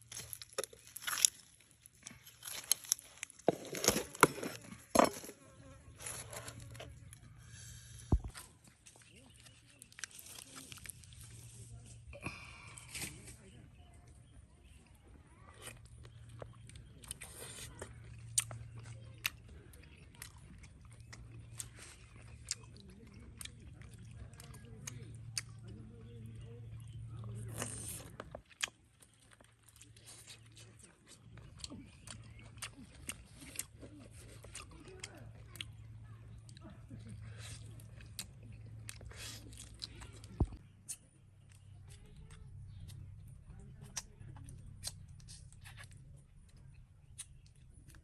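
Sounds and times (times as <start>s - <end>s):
person chewing and biting: 0.0s - 11.6s, 15.5s - 25.7s, 26.8s - 35.8s, 36.5s - 41.7s
person eating with crisp crunches: 0.0s - 48.0s.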